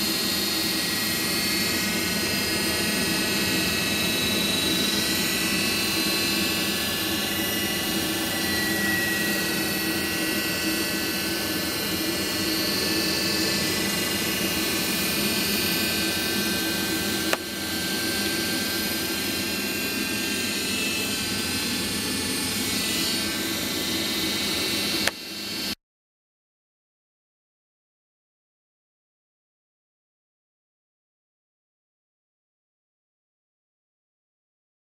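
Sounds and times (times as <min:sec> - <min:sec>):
gas boiler humming: 0:00.0 - 0:25.8.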